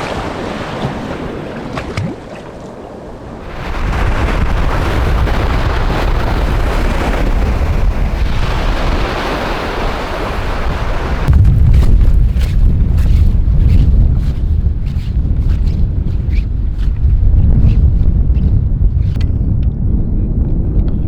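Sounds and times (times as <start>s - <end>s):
ocean surf washing on beach: 0.0s - 19.2s
wind buffeting microphone: 0.0s - 21.0s
loud low rumble: 11.3s - 21.0s.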